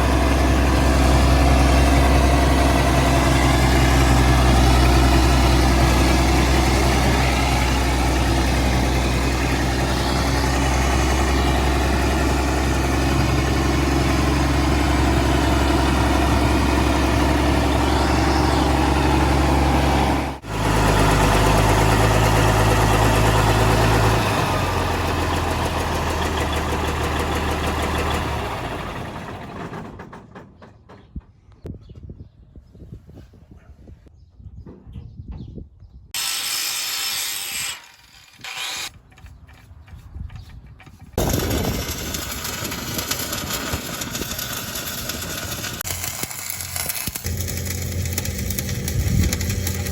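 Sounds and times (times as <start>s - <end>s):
diesel tractor engine idling: 0.0s - 30.6s, 47.2s - 49.9s.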